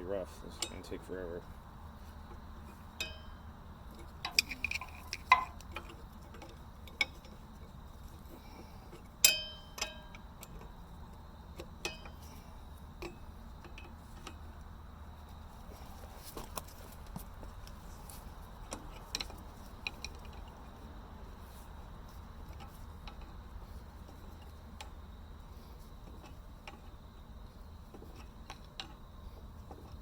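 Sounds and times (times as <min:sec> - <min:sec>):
ringing metallic clank: 0:00.5 - 0:01.0, 0:03.0 - 0:03.5, 0:09.2 - 0:10.2, 0:11.8 - 0:12.3
wrench clinking on steel: 0:00.5 - 0:01.0, 0:03.0 - 0:03.4, 0:09.2 - 0:10.2, 0:11.8 - 0:12.3.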